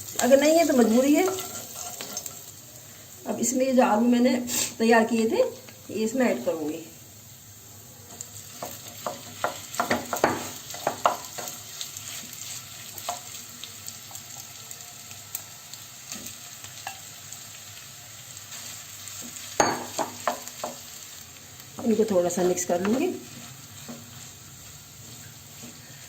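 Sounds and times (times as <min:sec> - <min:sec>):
food sizzling in oil: 0:00.0 - 0:26.0
spoon knocking and scraping pan: 0:00.2 - 0:02.5, 0:08.1 - 0:13.4, 0:19.2 - 0:21.0, 0:21.8 - 0:26.0.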